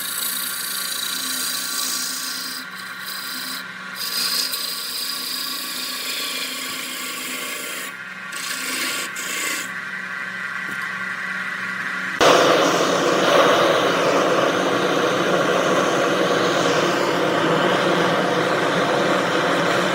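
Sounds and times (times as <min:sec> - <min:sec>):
turning tool scraping wood: 0:00.0 - 0:09.8
wood lathe motor hum: 0:00.0 - 0:19.9.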